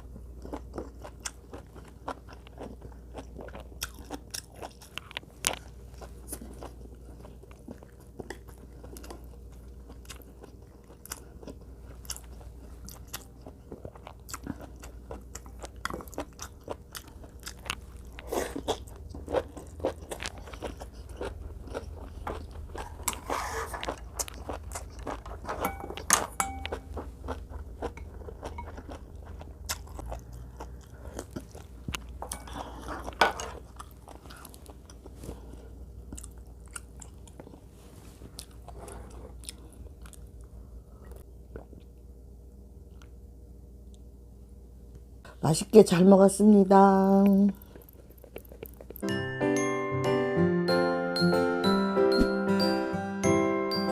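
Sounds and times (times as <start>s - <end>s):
crunchy bites and chewing: 0.4s - 26.2s.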